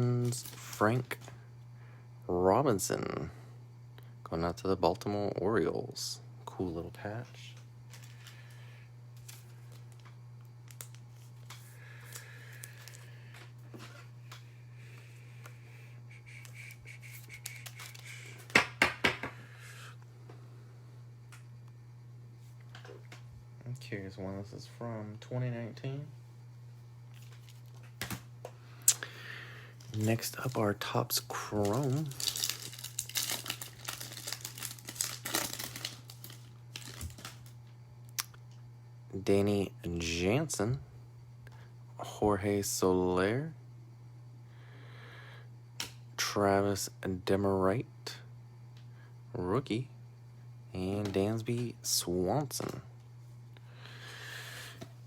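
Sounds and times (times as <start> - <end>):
steady low hum: 0.0 - 55.0
cards and plastic rustling: 0.2 - 1.3, 7.5 - 8.6, 9.2 - 14.0, 16.4 - 18.6, 27.1 - 28.2, 29.8 - 37.6
cards clicking: 16.4 - 19.3
wrapper tearing and crinkling: 17.3 - 18.2, 31.5 - 37.5.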